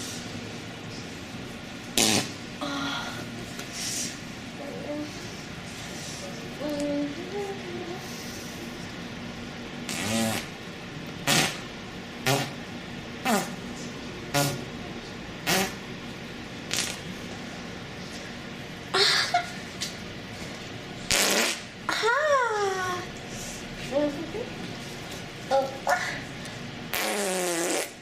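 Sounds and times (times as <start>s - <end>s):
short fart sounds: 2.0s - 2.4s, 9.9s - 10.6s, 11.2s - 12.6s, 13.2s - 13.6s, 14.3s - 14.7s, 15.4s - 15.8s, 16.7s - 17.0s, 21.1s - 21.7s, 26.9s - 28.0s.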